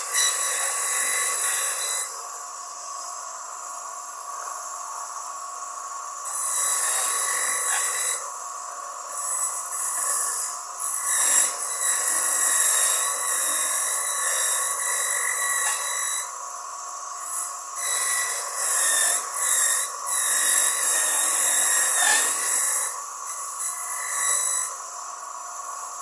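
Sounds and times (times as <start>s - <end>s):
coconut rasping on grater: 0.0s - 2.2s, 6.3s - 8.3s, 9.1s - 16.4s, 17.2s - 24.8s.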